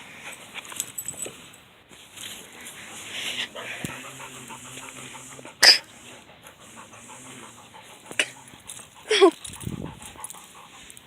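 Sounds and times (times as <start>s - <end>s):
puppy panting: 2.6s - 11.0s.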